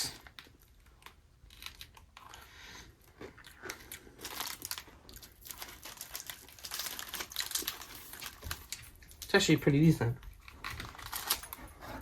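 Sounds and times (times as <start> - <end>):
biscuit stick crunching and chewing: 0.0 - 9.3.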